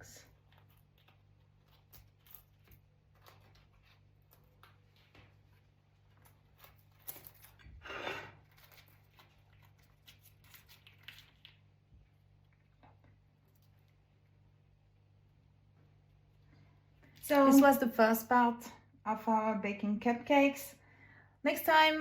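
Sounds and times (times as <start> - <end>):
knife scraping through cupcake: 7.6 - 11.0.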